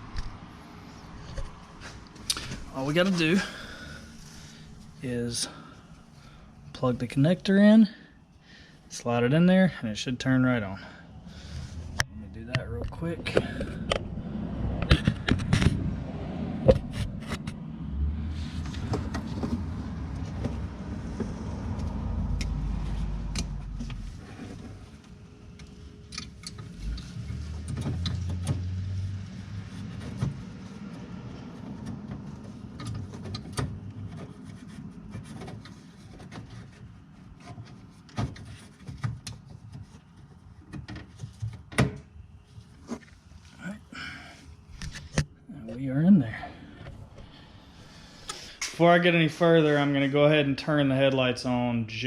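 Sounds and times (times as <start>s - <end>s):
low rumble: 11.3s - 25.4s.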